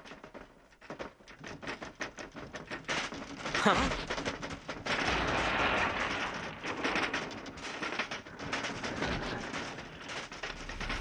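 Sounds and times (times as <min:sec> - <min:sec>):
battle rumble with rapid cracks: 0:03.2 - 0:11.0.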